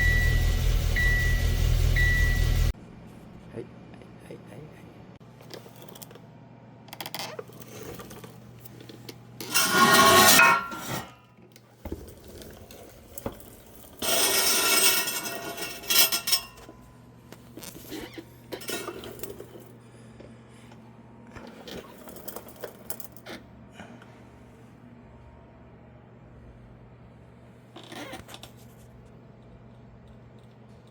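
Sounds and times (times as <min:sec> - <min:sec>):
low hum: 0:00.0 - 0:04.4
metal tools clinking: 0:09.4 - 0:11.2, 0:12.3 - 0:16.7, 0:18.5 - 0:19.6.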